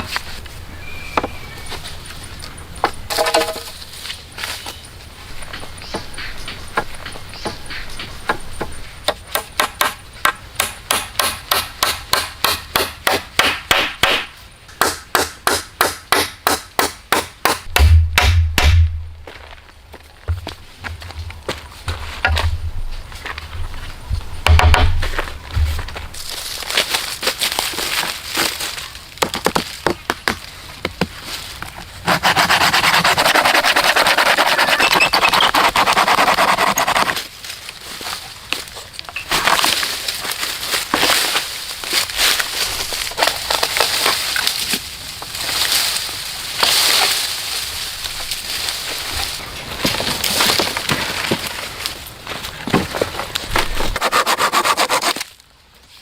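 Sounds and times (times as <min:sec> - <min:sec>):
hammer strikes: 0:05.9 - 0:19.1, 0:24.4 - 0:25.0
rasping on wood: 0:32.0 - 0:37.2, 0:53.9 - 0:55.2.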